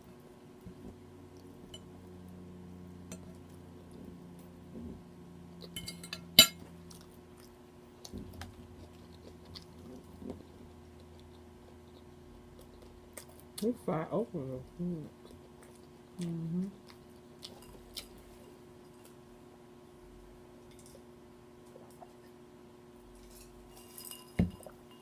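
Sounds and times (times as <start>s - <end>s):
faint steady hum: 0.0s - 25.0s
fork clinking against a dish: 5.7s - 6.6s.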